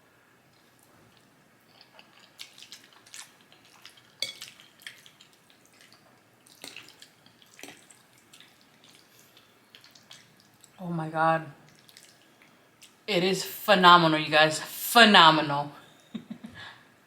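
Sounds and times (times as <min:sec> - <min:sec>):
wet chewing sounds: 0:00.5 - 0:10.8, 0:11.6 - 0:13.0.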